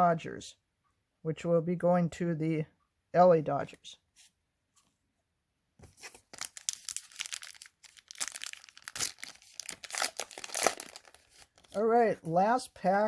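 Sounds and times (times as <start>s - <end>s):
wrapper tearing and crinkling: 6.0s - 11.8s.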